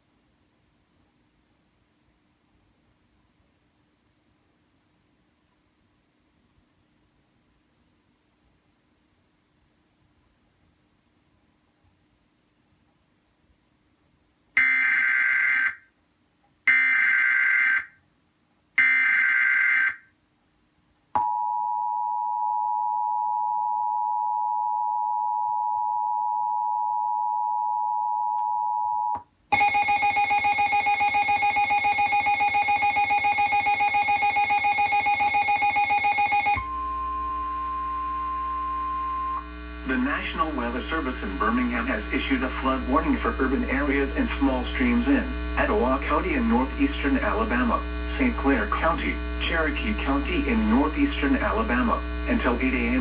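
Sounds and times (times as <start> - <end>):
rapidly pulsing alarm tone: 29.5 - 53.0
data header bursts: 39.5 - 53.0.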